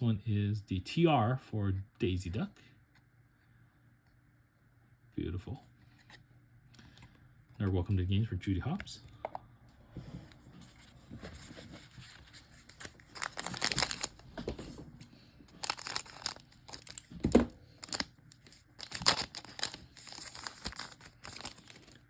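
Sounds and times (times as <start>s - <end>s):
wrapper crinkling: 11.4s - 22.0s
foil pack tearing: 12.6s - 14.4s, 15.5s - 22.0s.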